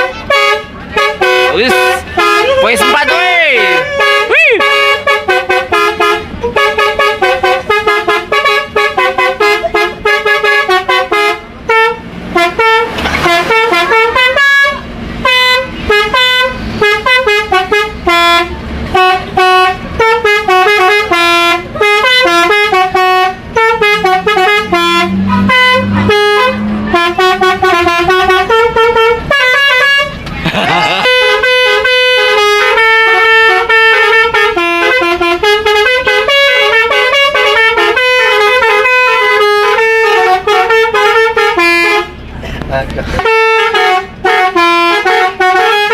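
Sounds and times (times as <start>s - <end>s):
bus horn playing fast melody: 0.0s - 42.3s, 43.2s - 45.9s.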